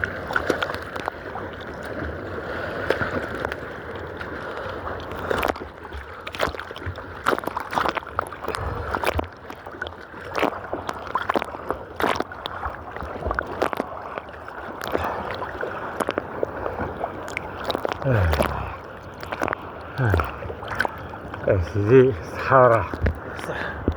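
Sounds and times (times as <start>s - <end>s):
sea water sloshing: 0.0s - 23.9s
sharp splashes: 5.2s - 21.2s.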